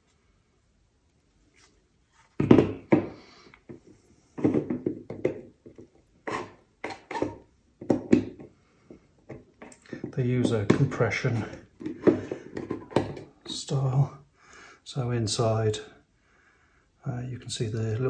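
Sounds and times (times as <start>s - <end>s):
plastic and metal parts knocking: 4.4s - 8.5s, 9.2s - 13.3s.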